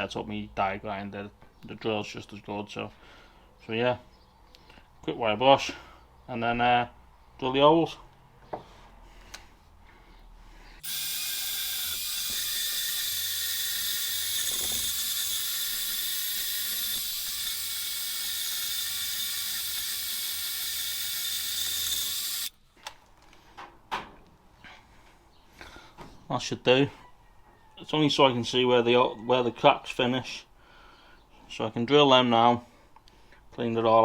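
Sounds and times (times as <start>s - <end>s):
faint motor whine: 10.8s - 22.5s
powered wire brush scraping metal: 10.8s - 22.5s.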